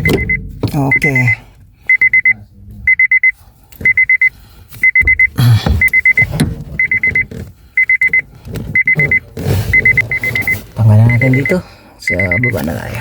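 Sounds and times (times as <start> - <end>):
electronic beeper high beeps: 0.0 - 3.3, 9.8 - 11.5, 12.1 - 12.7.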